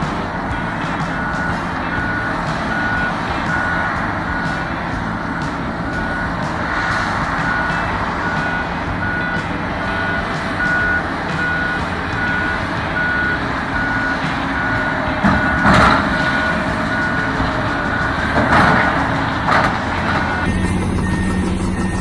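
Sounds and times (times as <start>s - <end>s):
diesel machinery running: 0.0s - 22.0s
loud noisy bursts: 0.0s - 22.0s
backup alarm beeping: 7.4s - 18.2s, 20.2s - 22.0s.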